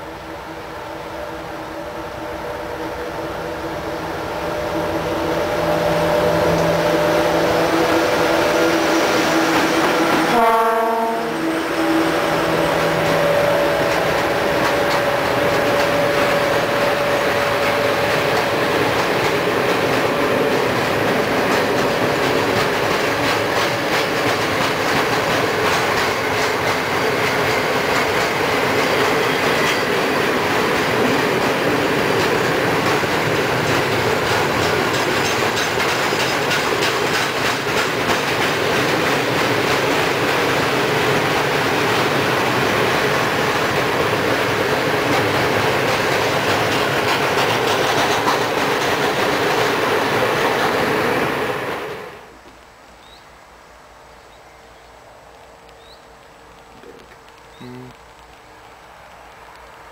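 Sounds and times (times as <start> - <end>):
train wheels clicking over rail joints: 11.4 - 51.5.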